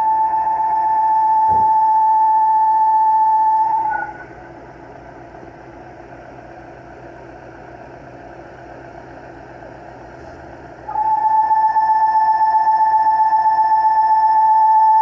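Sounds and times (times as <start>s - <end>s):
loud engine whistle: 0.0s - 4.7s, 6.0s - 9.7s, 10.9s - 15.0s
car engine idling: 3.6s - 10.9s.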